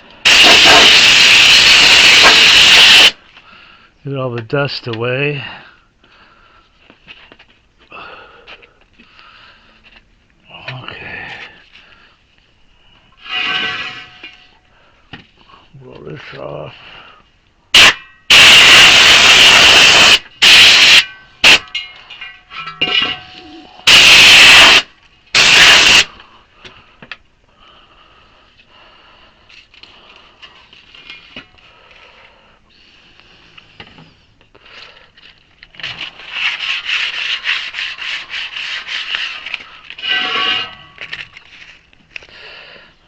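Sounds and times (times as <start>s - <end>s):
air blower blasts: 0.2s - 3.2s, 17.8s - 21.6s, 23.8s - 26.1s.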